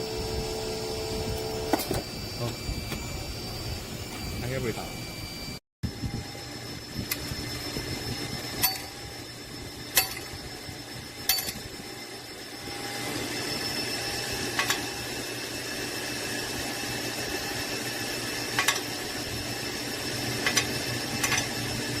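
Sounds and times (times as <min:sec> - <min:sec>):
lathe machine hum: 0:00.0 - 0:05.6.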